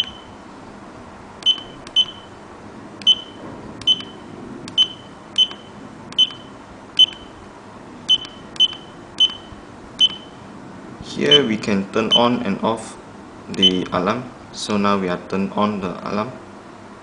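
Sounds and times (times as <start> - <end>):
button click with high beep: 0.0 - 0.4, 1.4 - 2.3, 3.0 - 4.2, 4.8 - 7.3, 8.1 - 10.4.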